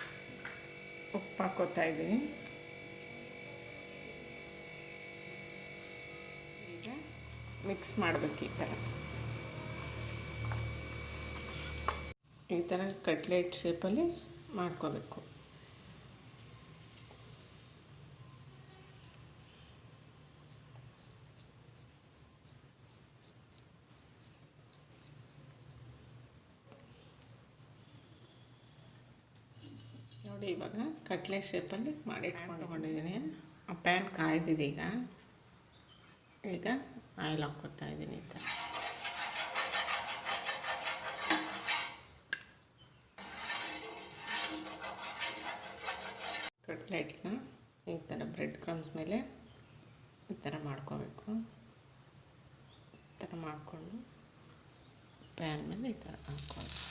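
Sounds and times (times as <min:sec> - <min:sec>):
oil sizzling in frying pan: 0:56.3 - 0:56.9.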